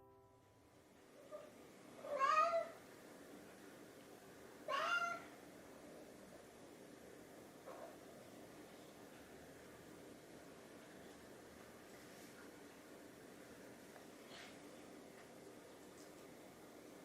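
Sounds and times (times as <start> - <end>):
cat meowing: 2.0 - 2.8, 4.6 - 5.4.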